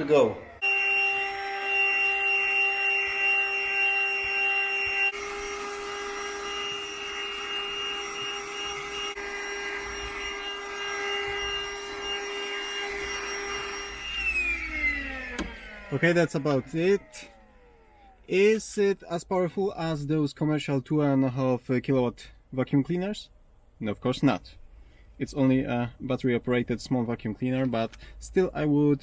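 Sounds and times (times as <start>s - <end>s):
vacuum cleaner whine: 0.0s - 18.3s
motor winding down: 0.0s - 18.6s.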